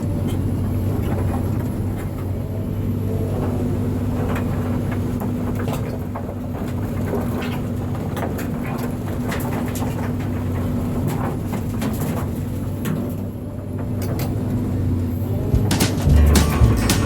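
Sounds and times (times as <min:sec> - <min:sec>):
diesel engine running: 0:14.4 - 0:17.0
heavy low sound: 0:15.4 - 0:17.0
sharp clanks and knocks: 0:15.6 - 0:17.0.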